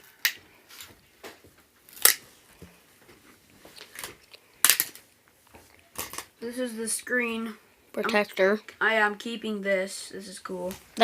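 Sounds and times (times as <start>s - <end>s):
plastic and glass snapping apart: 1.9s - 2.2s, 4.0s - 5.0s.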